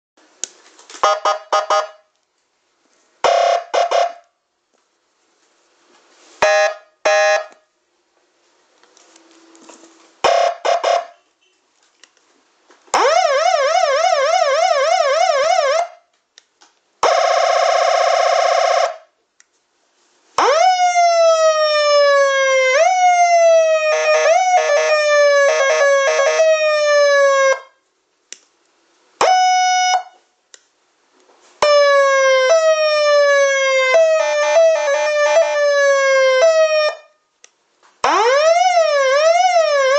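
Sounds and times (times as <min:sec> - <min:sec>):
electronic police siren: 0:10.2 - 0:11.2, 0:13.0 - 0:16.0, 0:20.4 - 0:27.7, 0:29.2 - 0:30.2, 0:31.6 - 0:37.2, 0:38.0 - 0:39.9.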